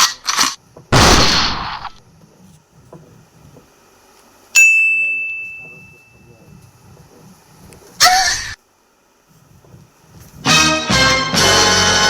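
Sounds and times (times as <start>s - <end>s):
loud noisy burst: 0.9s - 2.0s
high bell-like ding: 4.6s - 6.2s.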